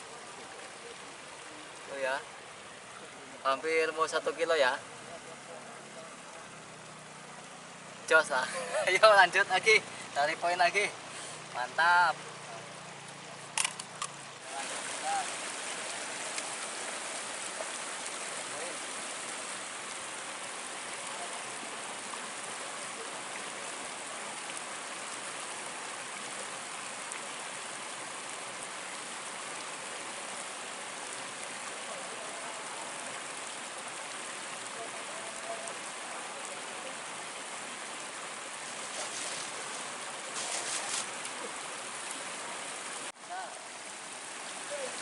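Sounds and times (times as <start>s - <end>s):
river water rushing: 0.0s - 45.0s
brief rustles: 40.3s - 41.4s.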